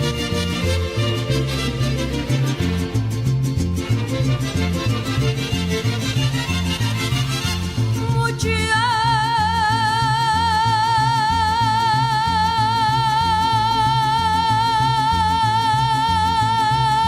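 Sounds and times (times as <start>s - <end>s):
bass line: 0.0s - 17.0s.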